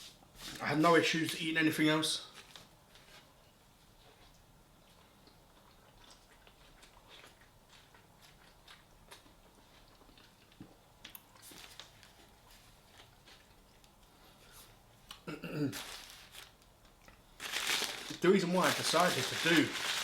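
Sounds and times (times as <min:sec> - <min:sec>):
person chewing and biting food: 0:05.3 - 0:11.5.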